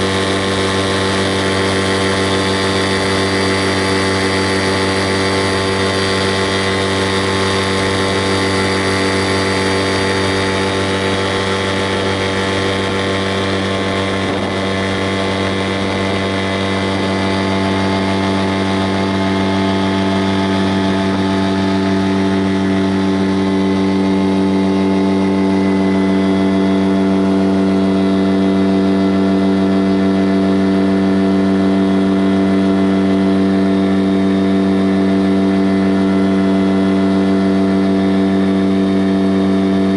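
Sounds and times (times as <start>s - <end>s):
engine humming steadily: 0.0s - 39.9s.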